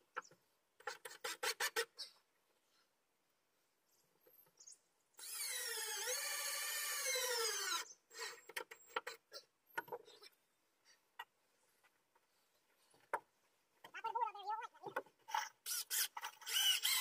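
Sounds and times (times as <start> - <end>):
power drill driving a screw: 5.2 - 8.5, 15.3 - 17.0.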